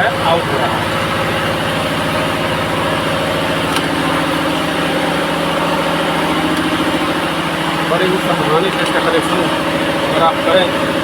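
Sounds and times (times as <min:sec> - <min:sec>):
heavy machinery throbbing: 0:00.0 - 0:11.0.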